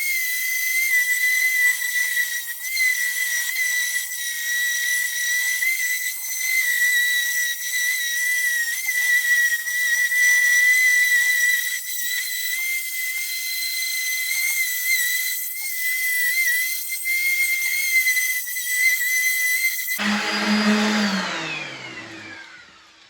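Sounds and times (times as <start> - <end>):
orbital sander whining: 20.0 - 23.0.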